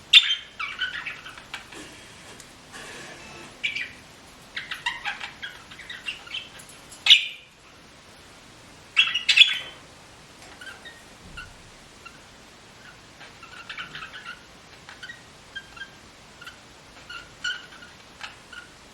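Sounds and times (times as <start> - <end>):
bird squeaking high calls: 0.1 - 1.7, 2.8 - 7.5, 9.0 - 9.8
bird squawks: 0.1 - 7.8, 8.9 - 9.8, 10.5 - 18.8.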